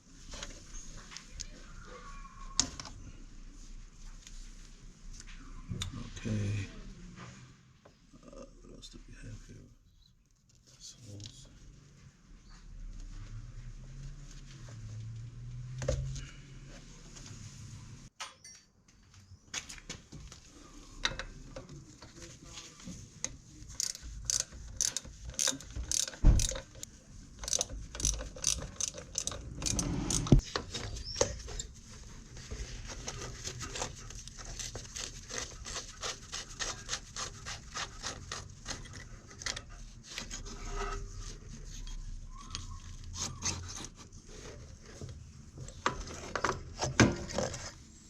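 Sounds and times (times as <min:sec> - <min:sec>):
hand tools and metal parts clicking: 0:23.7 - 0:31.8.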